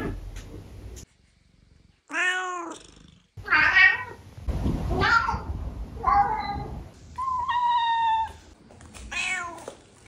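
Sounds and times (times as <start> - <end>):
cat meowing: 2.1 - 4.2.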